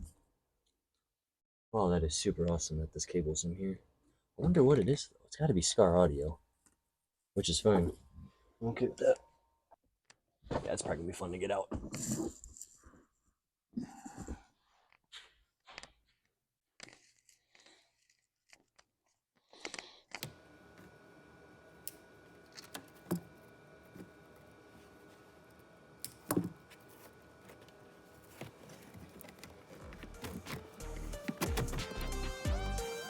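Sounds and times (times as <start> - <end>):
small clicks and rustles: 21.8 - 32.1.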